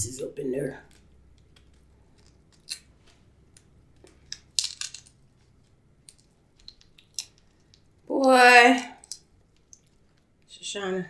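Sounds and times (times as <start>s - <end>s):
shellfish shell cracking by hand: 0.9s - 5.2s, 6.0s - 8.4s, 9.0s - 10.2s.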